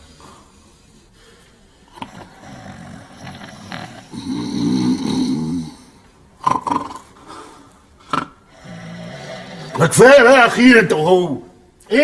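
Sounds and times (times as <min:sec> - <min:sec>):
men snoring: 0:01.8 - 0:09.8.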